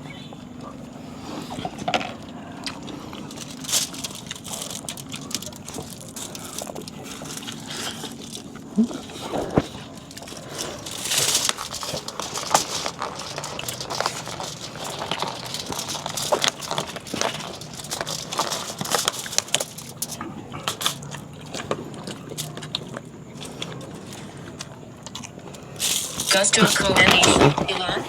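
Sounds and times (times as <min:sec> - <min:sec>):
crunching: 0:00.0 - 0:28.0
food packaging crinkling: 0:01.3 - 0:28.0
packaging rustle: 0:02.2 - 0:21.1.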